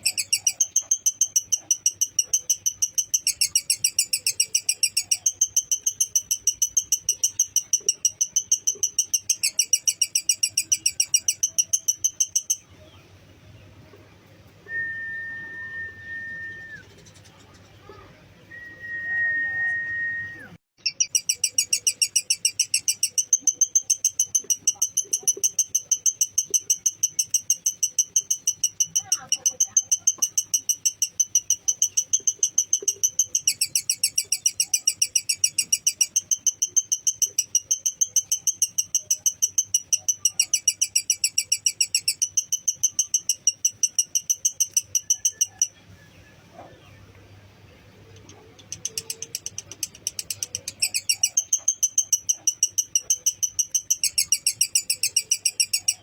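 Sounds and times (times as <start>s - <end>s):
lovebird shrill chirps: 0.0s - 12.7s, 20.3s - 45.8s, 48.2s - 56.0s
steady whistle tone: 14.7s - 16.9s, 18.5s - 20.6s.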